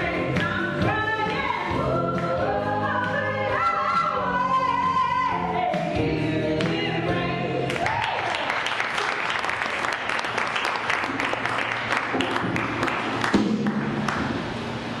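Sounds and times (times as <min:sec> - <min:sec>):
choir singing: 0:00.0 - 0:07.8
audience applause: 0:07.7 - 0:14.3.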